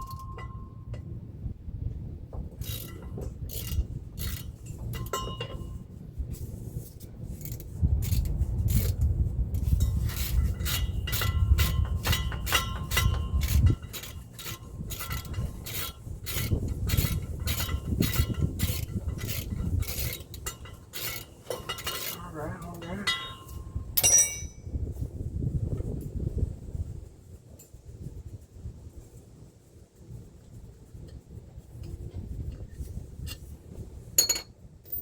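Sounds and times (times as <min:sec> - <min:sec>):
hand ratchet clicking: 0:02.6 - 0:05.6, 0:07.4 - 0:09.0, 0:09.8 - 0:24.6.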